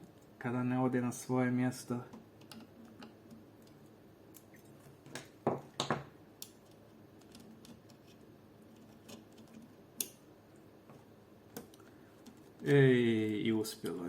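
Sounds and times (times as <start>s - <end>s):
small screw clicking and scraping: 6.4s - 10.1s.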